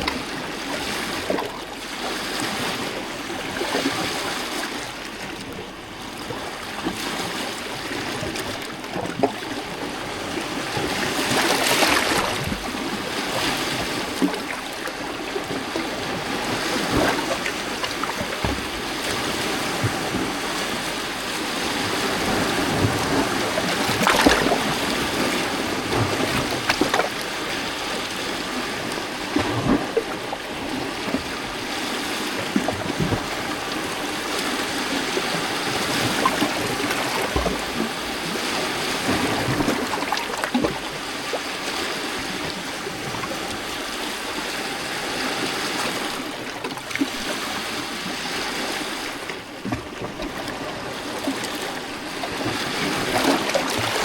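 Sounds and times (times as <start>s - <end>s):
waves lapping on rocky shore: 0.0s - 54.0s.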